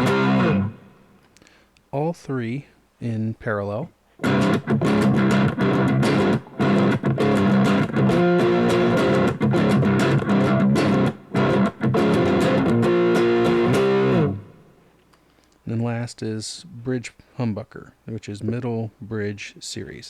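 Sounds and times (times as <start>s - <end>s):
distorted electric guitar chord riff: 0.0s - 1.1s, 4.2s - 14.8s.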